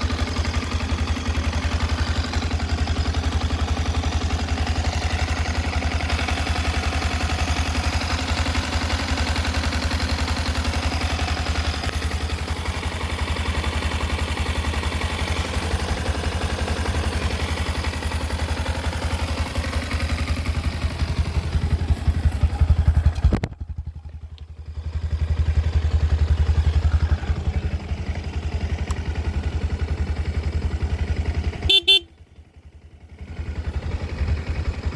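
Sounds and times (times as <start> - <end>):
motorcycle engine idling and revving: 0.0 - 34.9
short horn beep: 31.6 - 32.2.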